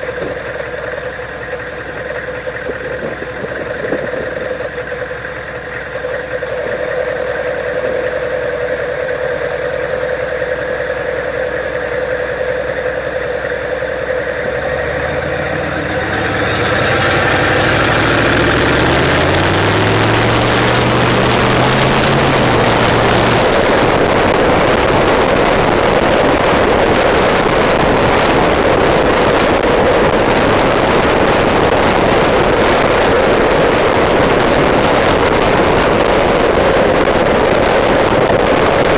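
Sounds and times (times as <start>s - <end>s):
diesel engine accelerating: 0.0s - 38.9s
wind on microphone: 2.6s - 4.9s, 15.1s - 38.9s.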